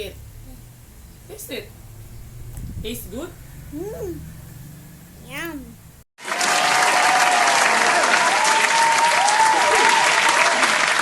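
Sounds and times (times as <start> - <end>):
crowd applause: 6.2 - 11.0
crowd cheering: 6.2 - 11.0.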